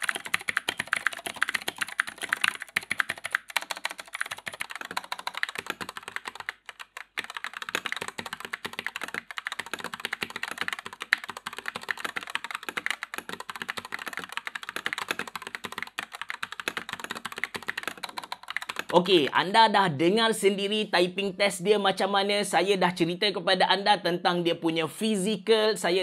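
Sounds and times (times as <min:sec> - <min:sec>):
mechanical keyboard typing: 0:00.0 - 0:19.3.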